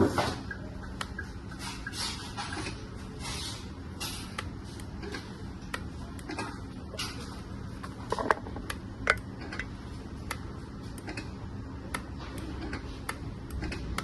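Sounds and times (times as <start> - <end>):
hydraulic pump humming: 3.9 - 9.9.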